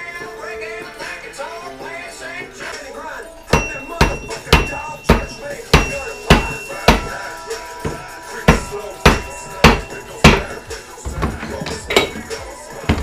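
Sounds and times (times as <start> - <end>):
hammer striking metal: 3.5 - 10.8, 11.4 - 13.0.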